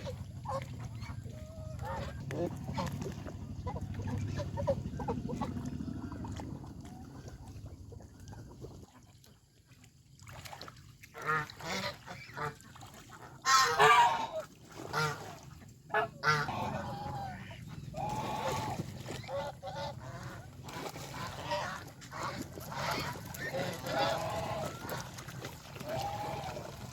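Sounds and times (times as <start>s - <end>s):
geese honking: 0.0s - 5.5s, 13.4s - 15.2s, 15.9s - 26.9s.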